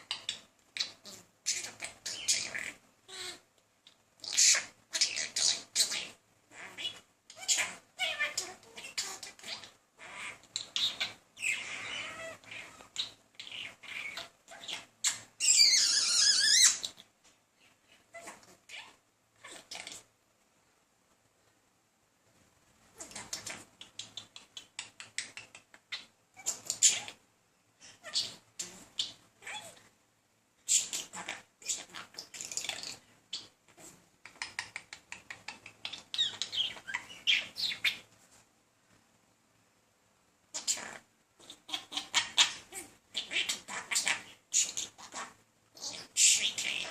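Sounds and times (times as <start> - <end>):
budgerigar chattering and warbling: 40.6 - 46.9.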